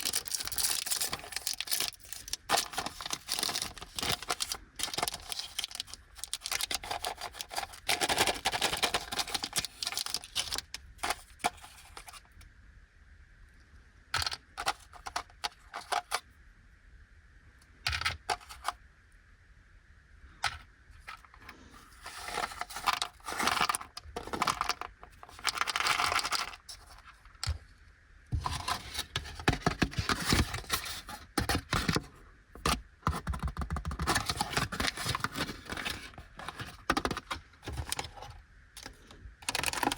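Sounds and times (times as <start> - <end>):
chocolate pieces clicking and rattling: 0.0 - 10.8
wrapper crinkling: 0.0 - 12.2, 22.0 - 27.1, 34.1 - 38.2, 38.8 - 39.9.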